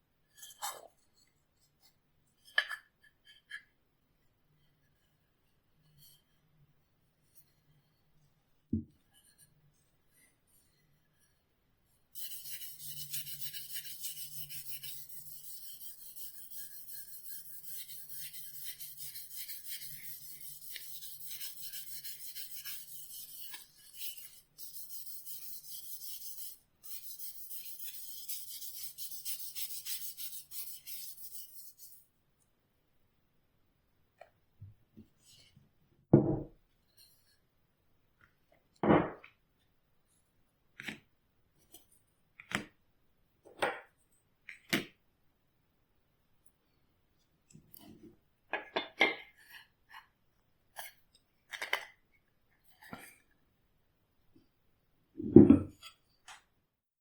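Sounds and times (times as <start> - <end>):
hand sanding scratchy hiss: 12.2 - 32.0
knock: 36.1 - 36.5, 38.8 - 39.2, 55.2 - 55.8.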